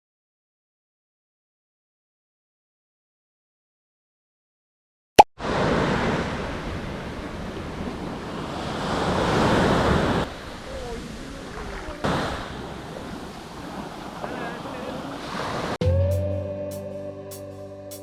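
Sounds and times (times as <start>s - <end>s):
sea surf washing onto beach: 5.4s - 15.8s.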